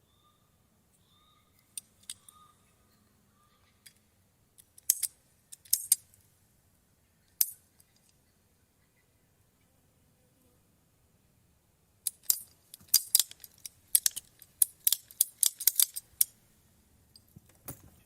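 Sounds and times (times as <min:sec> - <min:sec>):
pipe cutter clicking and snapping: 0:12.1 - 0:16.3.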